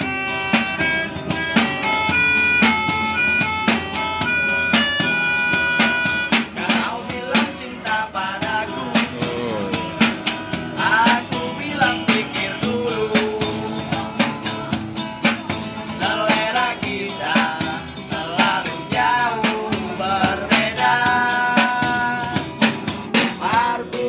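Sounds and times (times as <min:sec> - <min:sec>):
guitar: 0:00.0 - 0:24.0
percussion: 0:00.0 - 0:24.0
person singing: 0:05.8 - 0:24.0.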